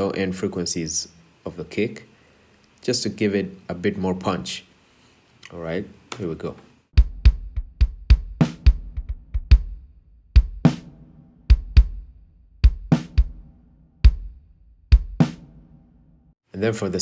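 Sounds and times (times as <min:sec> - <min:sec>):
kick drum hits: 0:07.0 - 0:09.8, 0:11.5 - 0:13.5, 0:14.1 - 0:15.4.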